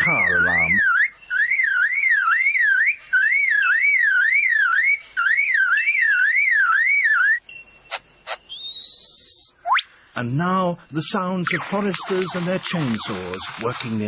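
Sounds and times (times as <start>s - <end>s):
lyrebird mimicking a car alarm: 0.0s - 7.4s.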